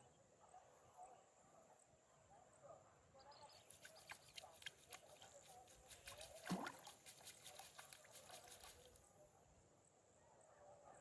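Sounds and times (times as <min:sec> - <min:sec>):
water dripping and splashing: 0:03.6 - 0:09.0.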